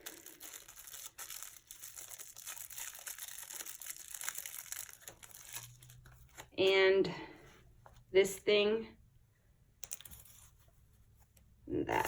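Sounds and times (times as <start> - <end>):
packaging crinkling: 0.0 - 6.5.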